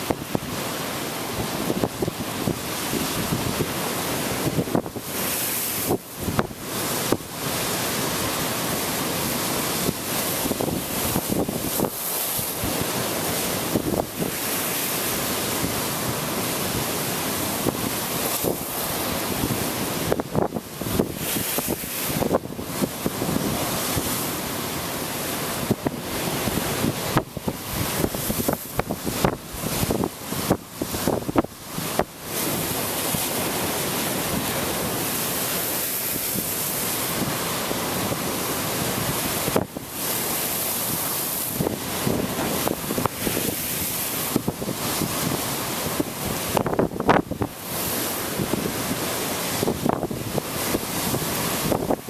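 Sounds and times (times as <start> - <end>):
wind buffeting microphone: 0.0 - 7.3, 9.2 - 52.0
storm waves breaking: 0.0 - 52.0.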